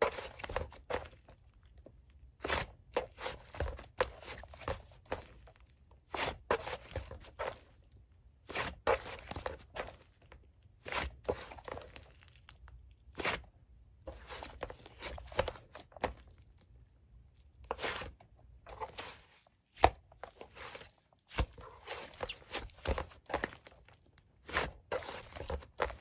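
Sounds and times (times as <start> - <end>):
slime squelching by hand: 0.0 - 16.6, 17.6 - 26.0.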